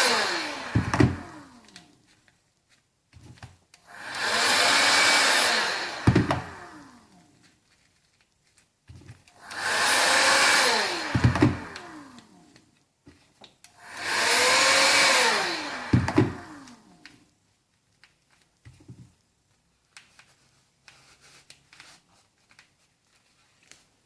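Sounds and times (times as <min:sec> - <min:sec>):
hot-air blower whoosh: 0:00.0 - 0:01.5, 0:03.9 - 0:07.0, 0:09.4 - 0:12.1, 0:13.8 - 0:16.7
motor winding down whine: 0:00.0 - 0:01.5, 0:04.0 - 0:06.9, 0:13.9 - 0:16.8.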